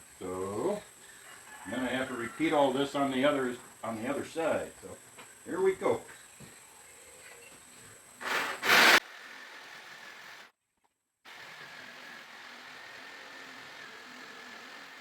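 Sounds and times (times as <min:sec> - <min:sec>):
power saw cutting plywood: 0:08.2 - 0:10.4, 0:11.3 - 0:15.0.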